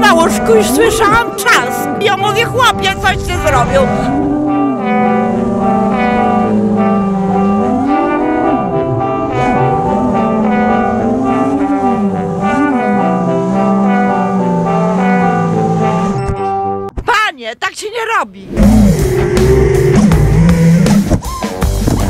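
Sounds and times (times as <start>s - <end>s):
sustained chords: 0.0s - 16.9s
sliding low brass line: 1.7s - 16.2s.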